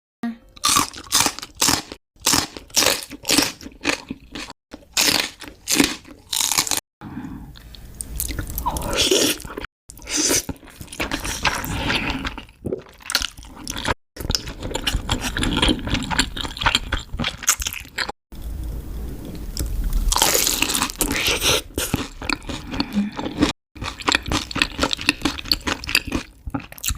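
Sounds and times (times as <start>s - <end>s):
chewing: 20.1s - 26.9s.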